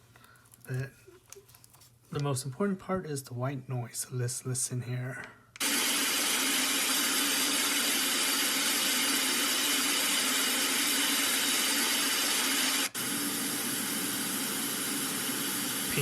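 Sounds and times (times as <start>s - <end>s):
white noise from speaker: 15.1s - 16.0s.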